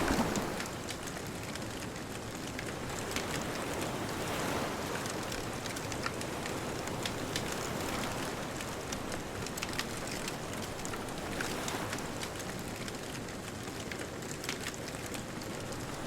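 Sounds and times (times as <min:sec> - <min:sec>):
distant ocean surf: 0:00.0 - 0:01.6
bonfire crackling and popping: 0:00.0 - 0:16.0.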